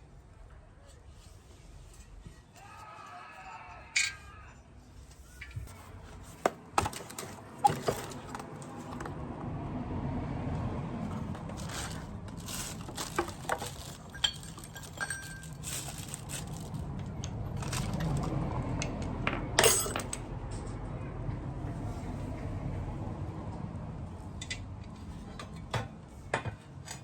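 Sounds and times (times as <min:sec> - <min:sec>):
metallic clinks and scrapes: 0:11.5 - 0:16.9, 0:19.6 - 0:20.8.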